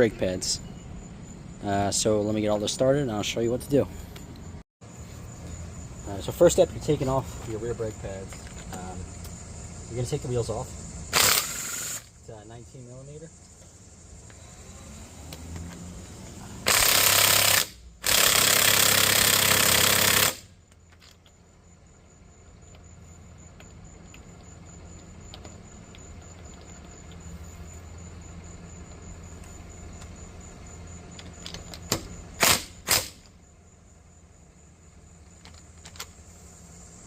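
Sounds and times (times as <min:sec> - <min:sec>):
impact wrench bursts: 0:11.1 - 0:12.2, 0:16.6 - 0:20.6, 0:31.9 - 0:33.3.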